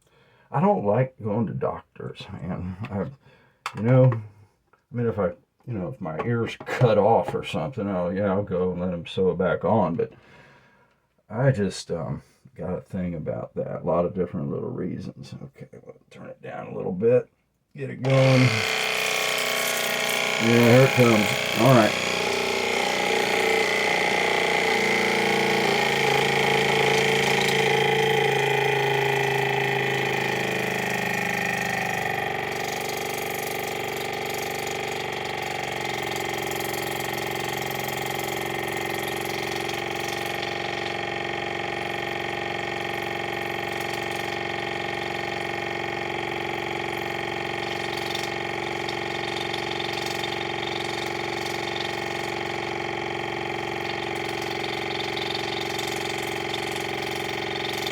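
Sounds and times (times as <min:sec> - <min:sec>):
pump motor buzzing hum: 0:18.0 - 0:57.9.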